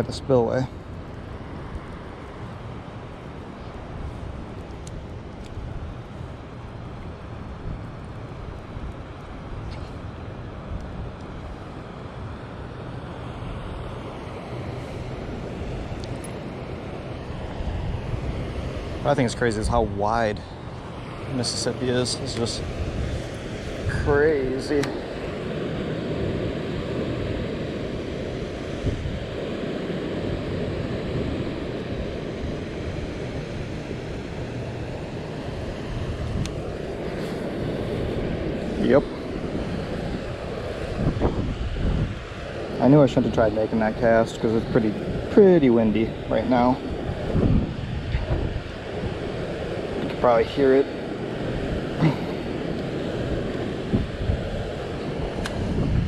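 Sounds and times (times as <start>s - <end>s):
flowing spillway water: 0.0s - 56.0s
wind rumbling on microphone: 0.0s - 56.0s.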